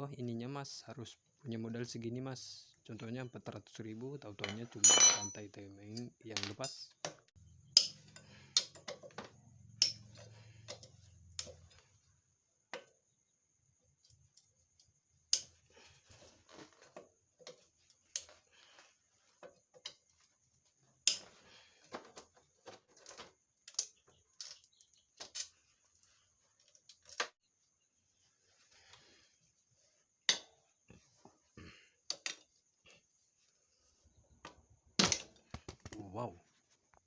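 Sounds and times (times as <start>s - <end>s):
metallic clicks of hand tools: 7.8s - 9.1s, 9.8s - 11.8s, 14.3s - 15.6s, 21.0s - 21.3s.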